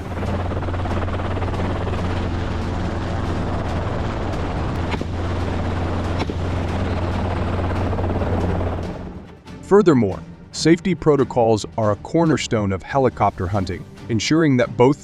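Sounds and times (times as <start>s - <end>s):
helicopter engine and rotor hum: 0.0s - 10.6s.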